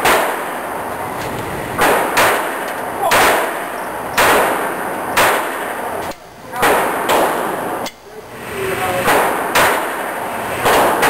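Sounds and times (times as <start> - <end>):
pistol shots with ringing: 1.8 - 7.9, 9.0 - 11.0.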